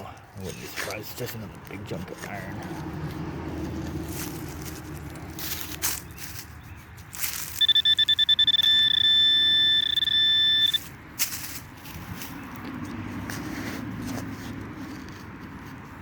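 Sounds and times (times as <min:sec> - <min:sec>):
metal detector high beeps: 0:07.5 - 0:10.9
steady high tone: 0:07.6 - 0:10.9.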